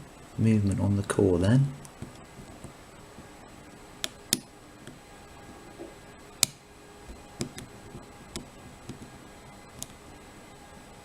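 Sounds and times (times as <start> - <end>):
lock pick metallic clicks: 6.4 - 6.6.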